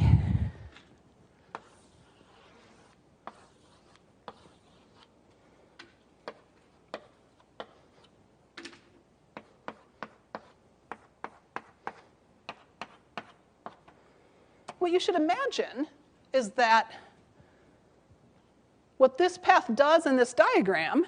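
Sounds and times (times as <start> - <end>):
sharp taps writing on board: 9.4 - 14.0.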